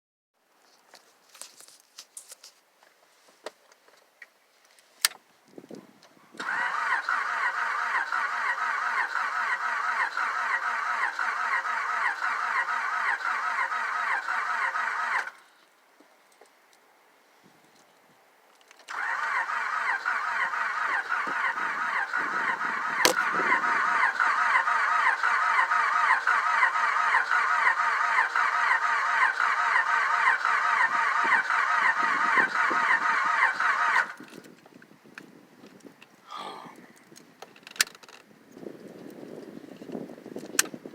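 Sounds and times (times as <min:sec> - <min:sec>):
starter cranking engine: 0:06.4 - 0:15.5, 0:18.8 - 0:34.6.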